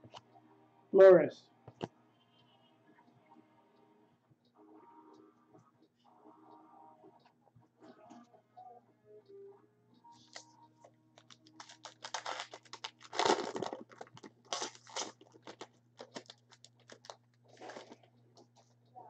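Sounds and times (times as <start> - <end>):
foil wrapper tearing and crinkling: 11.2 - 18.0
cards rustling and clicking: 11.2 - 18.6.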